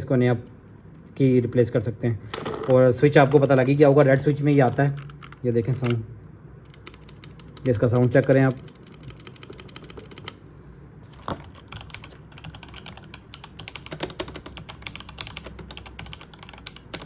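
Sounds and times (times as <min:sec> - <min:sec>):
mechanical keyboard typing: 0:02.6 - 0:06.0, 0:06.6 - 0:10.4, 0:11.1 - 0:17.0.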